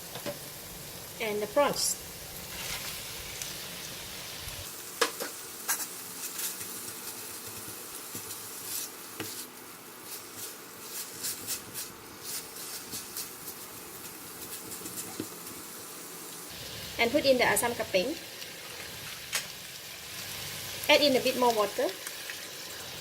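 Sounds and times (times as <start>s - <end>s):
prawns sizzling in oil: 0.0s - 23.0s
utensil scraping against pan: 5.2s - 15.6s.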